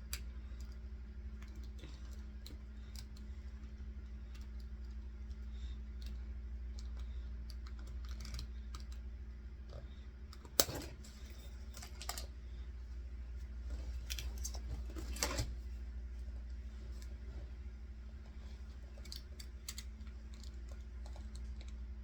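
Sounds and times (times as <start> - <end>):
steady low hum: 0.0 - 22.0
small plastic clicks and rattles: 0.1 - 9.0.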